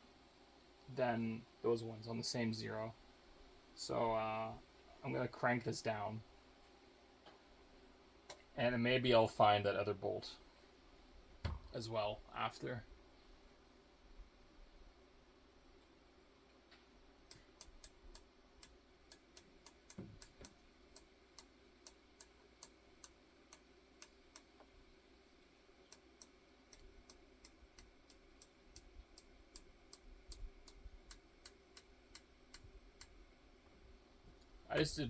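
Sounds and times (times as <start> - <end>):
scope turret clicking: 25.9 - 33.2.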